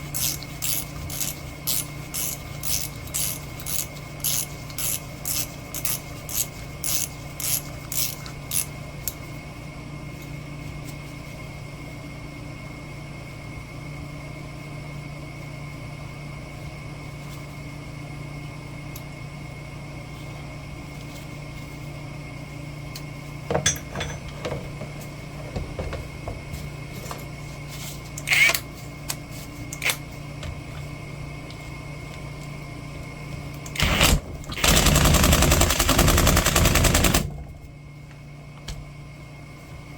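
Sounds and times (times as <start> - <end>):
mechanical hum with high whine: 0.0 - 39.9
hand ratchet clicking: 0.1 - 8.7
metal clinks and knocks: 23.6 - 24.6.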